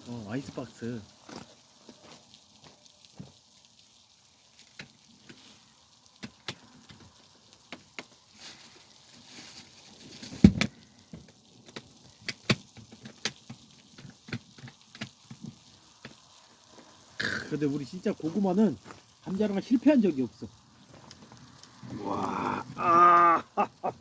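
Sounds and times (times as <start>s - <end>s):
faint hiss: 0.0s - 24.0s
wood fire crackling: 0.0s - 24.0s
sharp pops and clicks: 4.5s - 8.3s, 10.1s - 23.3s.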